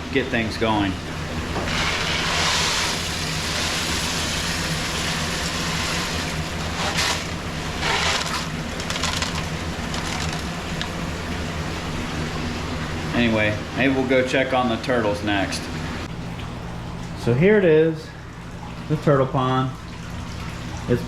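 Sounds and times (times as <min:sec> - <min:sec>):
low hum of pond equipment: 0:00.0 - 0:21.0
salt pouring into water: 0:01.7 - 0:11.1.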